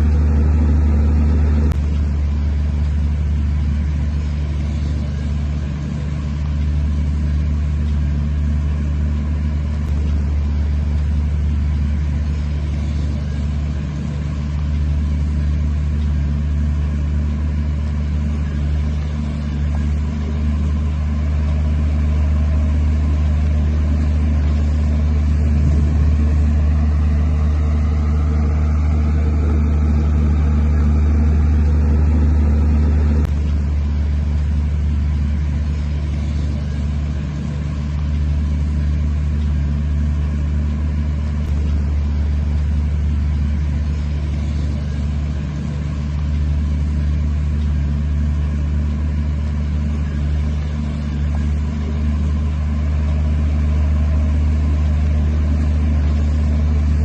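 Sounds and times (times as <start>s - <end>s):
diesel engine droning: 0.0s - 57.0s.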